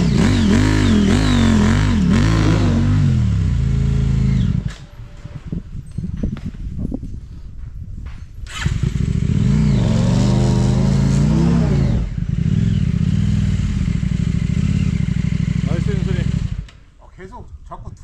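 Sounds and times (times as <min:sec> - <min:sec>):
motorcycle engine revving: 0:00.0 - 0:05.0, 0:08.5 - 0:16.8.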